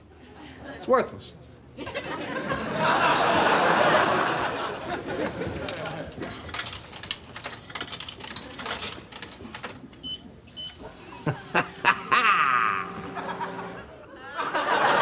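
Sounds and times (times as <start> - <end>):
vending machine motor whirring: 10.4 - 14.1.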